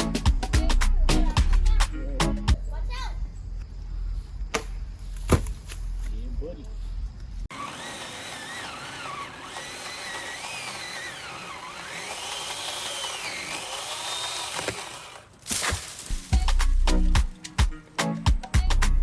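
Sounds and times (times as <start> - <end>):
music: 0.0 - 2.7, 16.1 - 19.0
electric chainsaw motor whine: 7.5 - 15.4.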